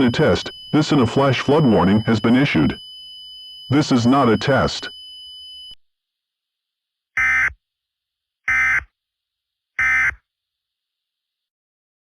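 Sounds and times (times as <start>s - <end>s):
short digital data bursts: 0.0s - 5.8s.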